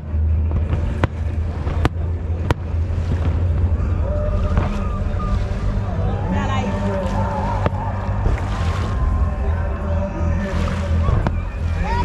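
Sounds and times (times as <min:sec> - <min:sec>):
steady low rumble: 0:00.0 - 0:12.0
fireworks exploding: 0:00.4 - 0:05.9.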